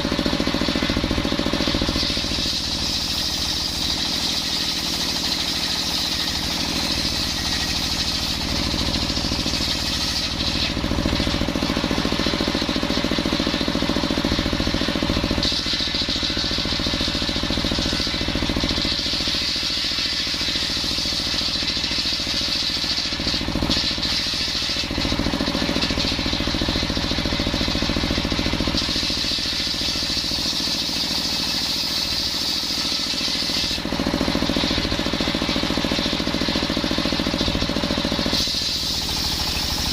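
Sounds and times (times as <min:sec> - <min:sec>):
saw blade whine: 0:00.0 - 0:39.9.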